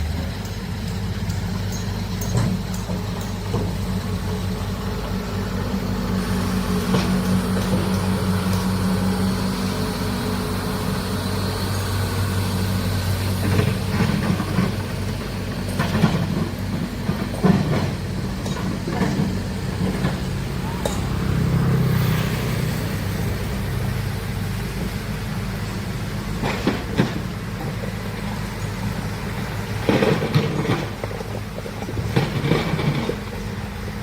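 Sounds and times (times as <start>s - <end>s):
heavy diesel engine running: 0.0s - 34.0s
knocks and clanks: 0.2s - 4.0s, 13.4s - 21.4s, 26.4s - 28.0s, 29.8s - 33.6s.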